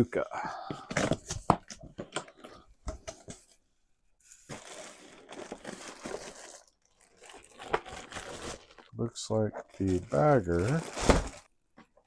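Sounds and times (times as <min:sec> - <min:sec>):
packaging rustling and crinkling: 0:04.4 - 0:11.9.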